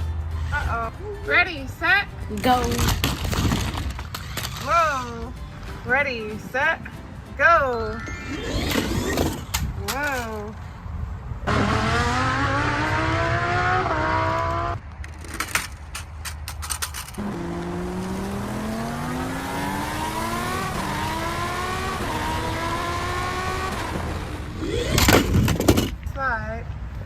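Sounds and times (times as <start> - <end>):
race car engine accelerating: 11.4 - 14.8, 17.2 - 25.3.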